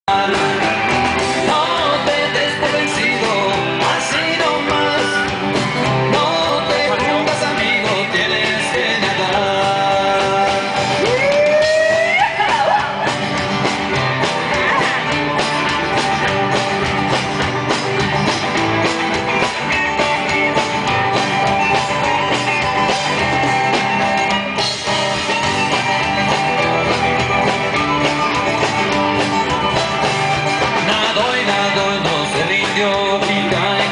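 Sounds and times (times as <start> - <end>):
person singing: 0.0 - 13.2, 30.2 - 33.9
rock band playing: 0.0 - 33.9.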